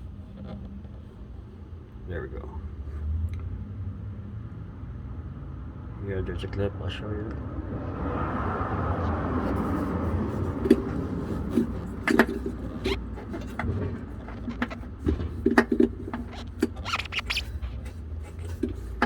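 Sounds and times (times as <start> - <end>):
low outdoor rumble: 0.0 - 19.0
passing vehicle rushing: 7.4 - 15.4.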